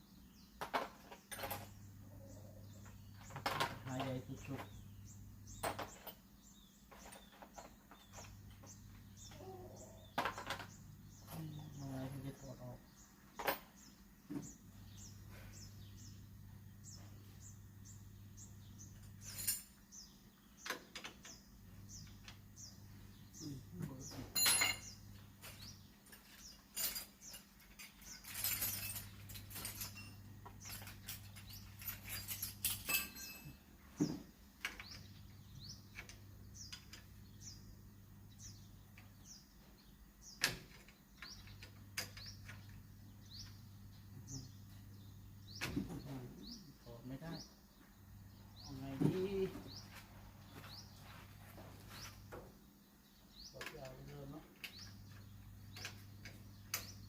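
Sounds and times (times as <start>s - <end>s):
bird chirping: 0.0s - 57.0s
hand tools clinking and knocking: 0.6s - 1.9s, 2.6s - 4.9s, 5.5s - 12.6s, 19.0s - 19.8s, 24.0s - 35.2s, 53.4s - 57.0s.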